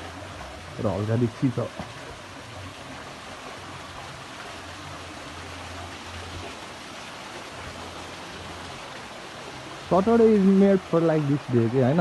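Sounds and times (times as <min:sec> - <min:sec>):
small waterfall pouring: 0:00.0 - 0:12.0.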